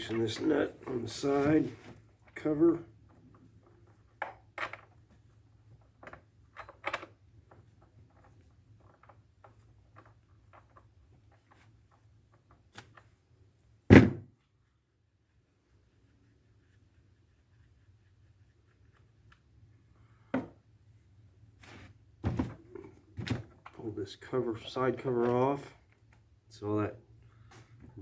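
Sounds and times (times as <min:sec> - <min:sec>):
loud thunk: 0:13.9 - 0:14.3.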